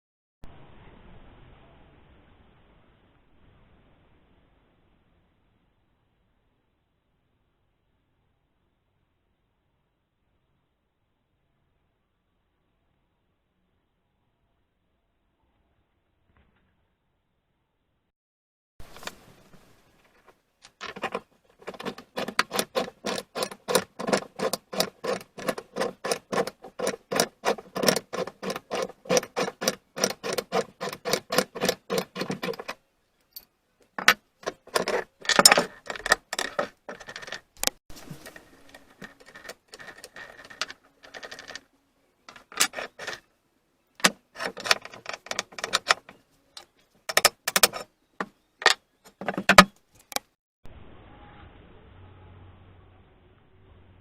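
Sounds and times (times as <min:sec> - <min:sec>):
metal parts clinking: 0:20.7 - 0:41.6, 0:42.3 - 0:43.2, 0:44.0 - 0:46.2.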